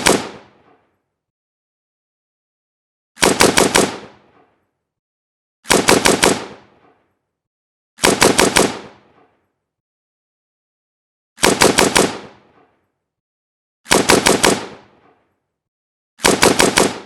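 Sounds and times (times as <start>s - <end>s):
rifle firing bursts: 0.0s - 0.6s, 3.2s - 4.4s, 5.7s - 6.8s, 8.0s - 9.1s, 11.4s - 12.5s, 13.9s - 15.0s, 16.2s - 17.0s.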